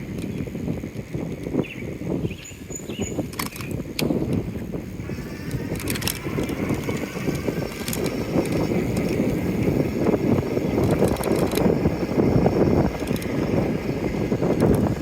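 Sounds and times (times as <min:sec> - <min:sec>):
wind buffeting microphone: 0:00.0 - 0:15.0
faint clicks: 0:05.0 - 0:09.7.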